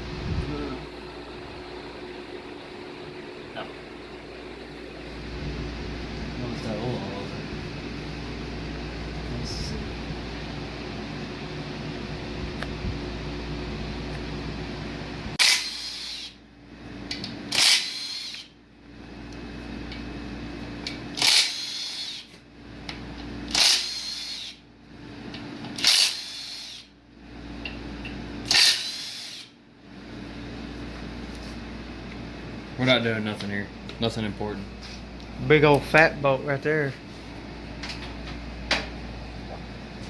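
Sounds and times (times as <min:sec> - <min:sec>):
steady low hum: 0:00.0 - 0:40.0
power tool bursts: 0:15.4 - 0:16.4, 0:17.5 - 0:18.5, 0:21.2 - 0:22.3, 0:23.5 - 0:24.6, 0:25.8 - 0:26.9, 0:28.5 - 0:29.5.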